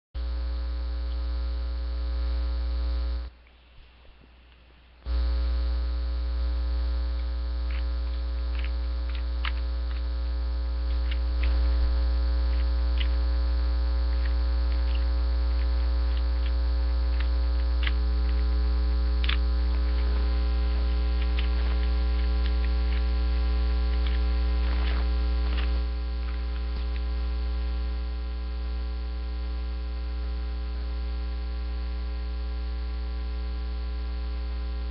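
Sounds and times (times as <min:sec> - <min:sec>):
electrical mains hum: 0:00.2 - 0:34.9
faint clicks: 0:02.9 - 0:27.4.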